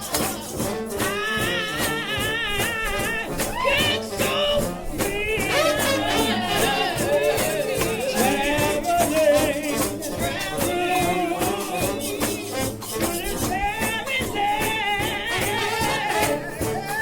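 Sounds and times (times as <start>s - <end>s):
fast steady percussion: 0.0s - 17.0s
horns playing with wide vibrato: 0.0s - 17.0s.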